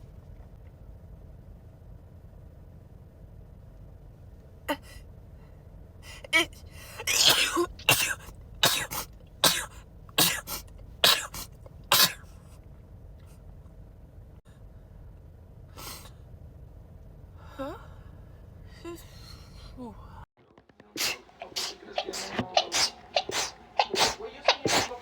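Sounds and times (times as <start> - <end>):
person sneezing: 6.9 - 12.3, 21.0 - 25.0.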